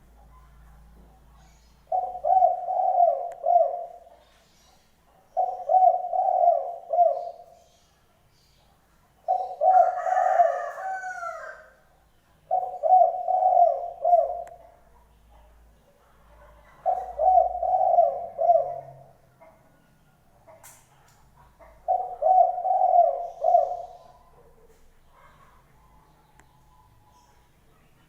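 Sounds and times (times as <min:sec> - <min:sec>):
dove cooing: 0:01.3 - 0:07.8, 0:09.2 - 0:11.8, 0:12.5 - 0:14.7, 0:16.5 - 0:19.6, 0:21.4 - 0:25.6.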